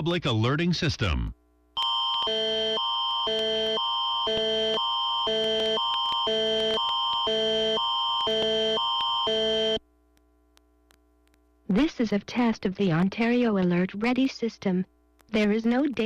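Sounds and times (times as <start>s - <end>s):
emergency alert tone: 1.8s - 9.8s.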